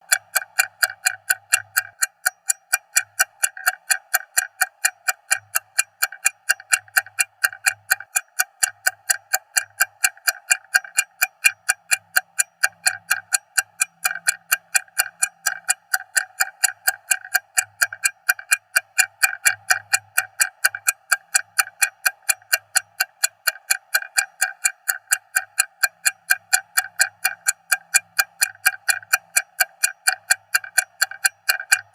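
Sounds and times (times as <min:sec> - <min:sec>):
stopwatch ticking: 0:00.0 - 0:31.9.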